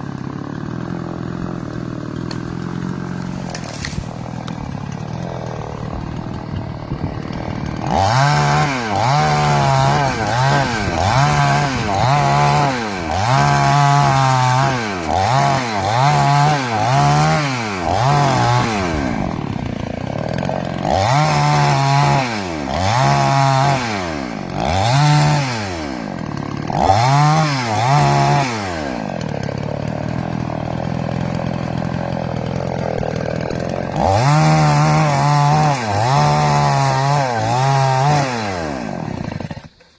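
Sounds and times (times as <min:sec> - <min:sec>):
chainsaw engine revving: 0:00.0 - 0:39.9.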